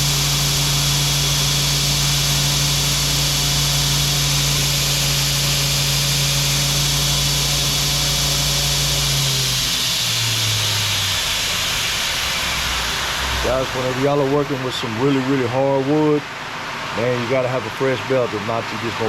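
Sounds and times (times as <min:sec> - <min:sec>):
belt grinder sanding wood: 0:00.0 - 0:12.5.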